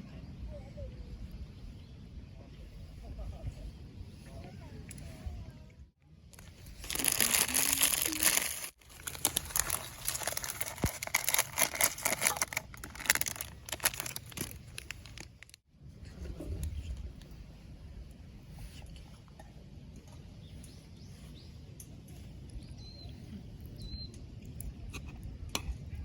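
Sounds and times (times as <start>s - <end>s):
plastic wrapper crinkling: 6.3s - 15.6s
wrapper tearing open: 6.4s - 15.6s.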